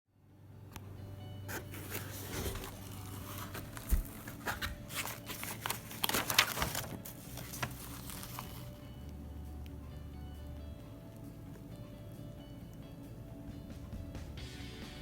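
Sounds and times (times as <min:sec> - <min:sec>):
crinkling and rustling of handling: 0:01.5 - 0:09.8.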